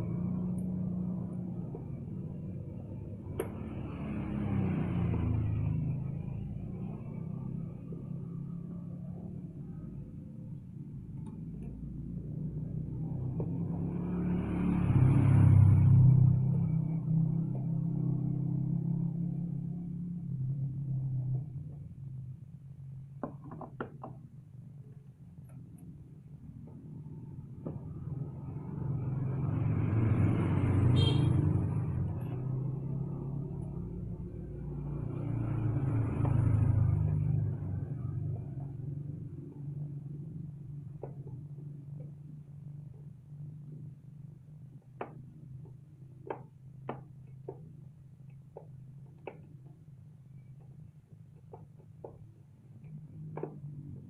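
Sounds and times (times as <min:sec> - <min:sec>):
motor vehicle passing: 0:00.0 - 0:10.0, 0:11.0 - 0:21.6, 0:26.8 - 0:44.1
engine idling and revving: 0:00.0 - 0:23.4, 0:26.2 - 0:54.0.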